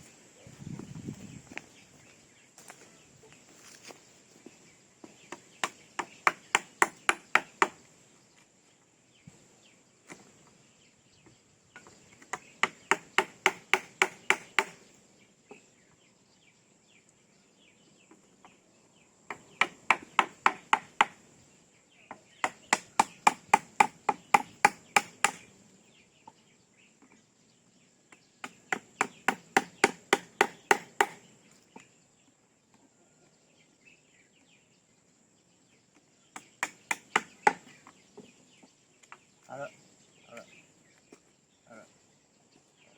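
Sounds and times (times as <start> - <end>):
hammer driving nails into wood: 5.3 - 7.8, 12.2 - 14.8, 19.3 - 21.2, 22.4 - 25.5, 28.4 - 31.2, 36.4 - 37.7.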